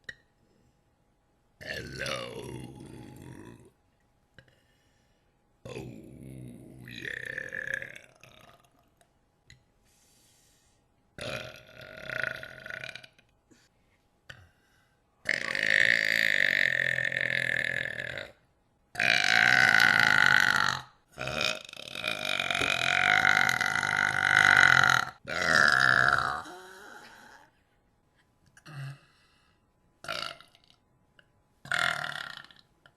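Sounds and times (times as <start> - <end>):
person burping: 1.6 - 3.7, 5.7 - 8.8, 11.2 - 13.2, 15.3 - 18.4, 19.0 - 27.5, 28.6 - 29.1, 30.0 - 30.8, 31.7 - 32.9.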